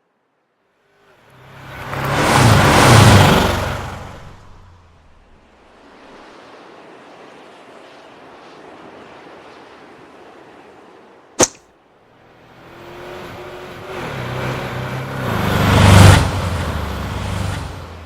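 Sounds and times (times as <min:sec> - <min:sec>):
car passing: 0:00.7 - 0:10.8, 0:12.0 - 0:18.0
sharp crack: 0:11.4 - 0:11.6.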